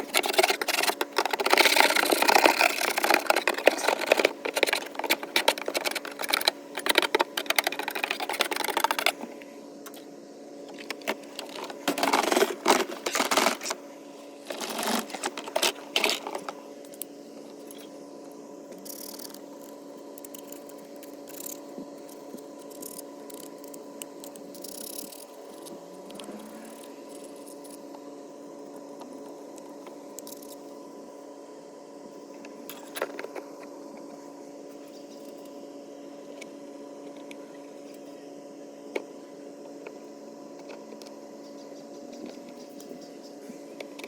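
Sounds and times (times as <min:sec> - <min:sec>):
paint scraper scraping: 0:00.0 - 0:09.2, 0:11.3 - 0:13.8, 0:14.4 - 0:16.5
faint steady hum: 0:00.0 - 0:44.0.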